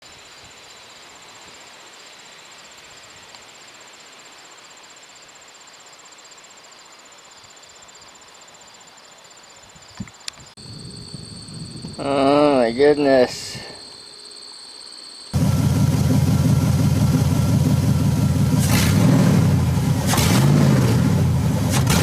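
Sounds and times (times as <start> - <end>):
faint hiss: 0.0 - 11.0, 11.8 - 15.3
crickets trilling: 0.0 - 18.6.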